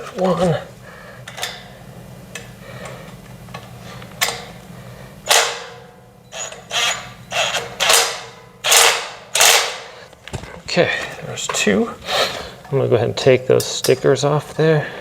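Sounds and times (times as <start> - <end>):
screw creaking and scraping: 6.4 - 7.9.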